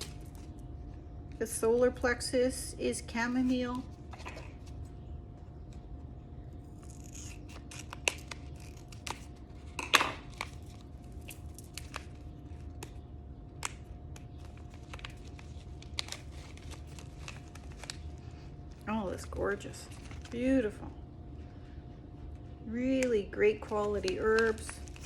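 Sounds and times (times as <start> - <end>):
loud packaging crackle: 6.6 - 13.0, 13.6 - 18.8, 23.7 - 25.0
packaging rustling and clicking: 13.6 - 18.2, 23.6 - 25.0.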